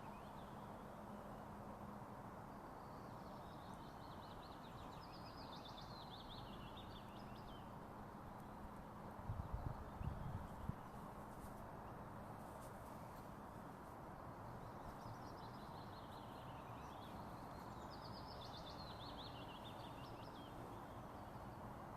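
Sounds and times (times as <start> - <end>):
faint steady hiss: 0.0 - 21.9
songbird chirping and trilling: 2.8 - 7.7, 14.5 - 21.7.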